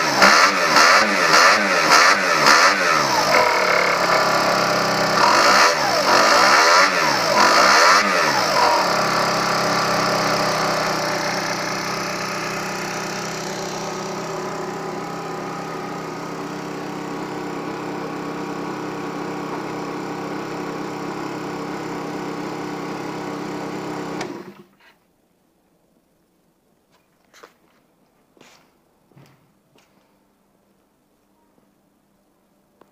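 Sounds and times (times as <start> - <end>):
scooter engine revving and idling: 0.0 - 24.8.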